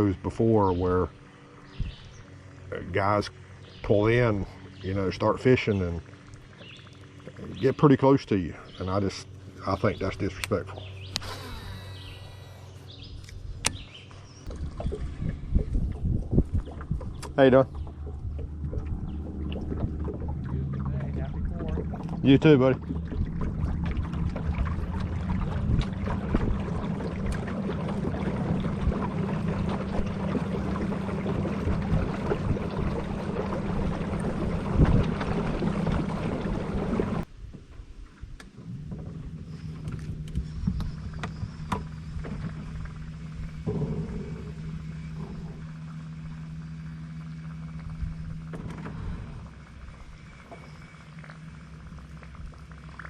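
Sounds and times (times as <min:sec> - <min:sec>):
boat motor humming: 0:00.0 - 0:53.0
water around hull: 0:00.0 - 0:53.0.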